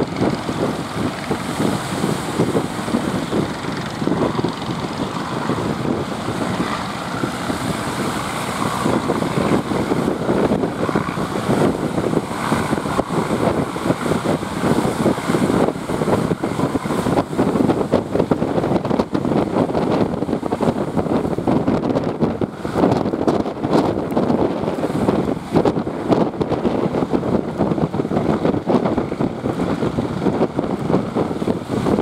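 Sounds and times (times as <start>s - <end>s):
fishing boat engine running: 0.0s - 32.0s
wind buffeting microphone: 0.0s - 32.0s.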